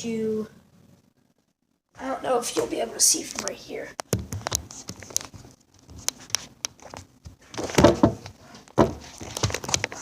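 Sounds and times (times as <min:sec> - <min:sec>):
knocking and rustling: 0:04.1 - 0:10.0.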